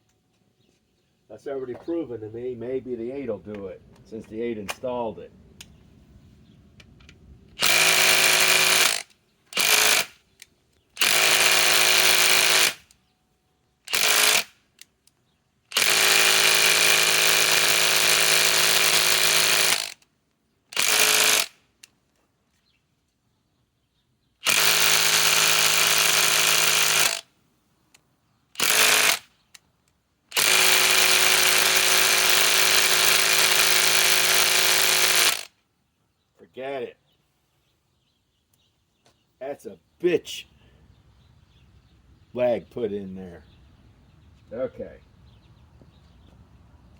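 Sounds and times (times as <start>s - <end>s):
impact wrench hammering screw: 7.6s - 10.2s, 11.0s - 12.9s, 13.9s - 14.5s, 15.7s - 20.0s, 20.7s - 21.6s, 24.4s - 27.3s, 28.6s - 29.3s, 30.3s - 35.5s.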